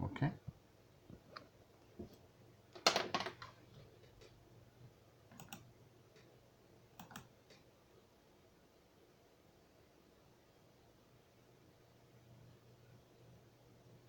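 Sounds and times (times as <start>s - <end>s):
computer clicks and taps: 5.3s - 6.3s, 7.0s - 7.7s.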